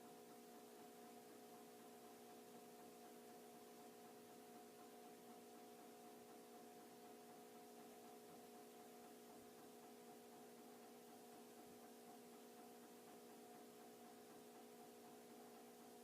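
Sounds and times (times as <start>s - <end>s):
ceiling fan motor humming: 0.0s - 16.0s.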